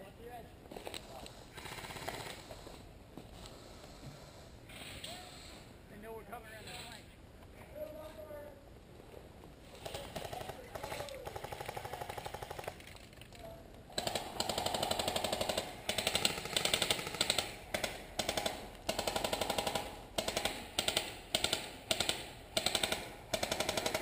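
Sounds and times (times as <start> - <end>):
airsoft guns firing: 9.8 - 12.8, 13.9 - 24.0.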